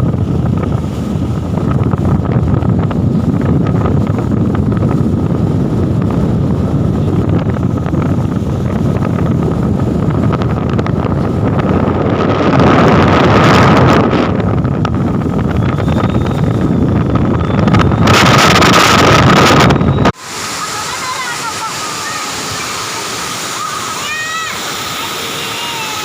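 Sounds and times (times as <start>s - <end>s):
wind buffeting microphone: 0.0s - 20.4s
loud rushing noise: 0.0s - 26.0s.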